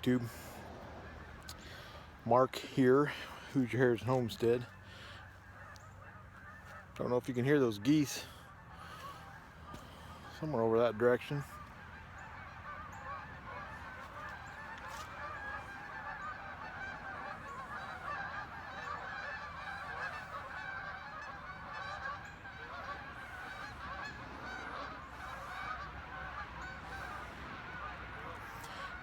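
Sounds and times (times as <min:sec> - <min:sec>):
geese honking: 0:00.0 - 0:29.0.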